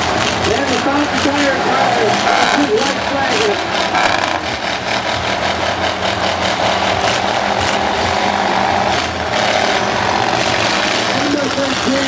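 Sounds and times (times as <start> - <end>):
car engines revving: 0.0 - 12.0.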